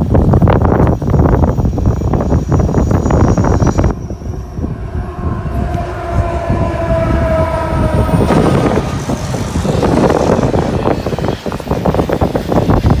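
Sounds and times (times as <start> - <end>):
wind noise on microphone: 0.0 - 13.0
locomotive horn chord: 3.9 - 11.3.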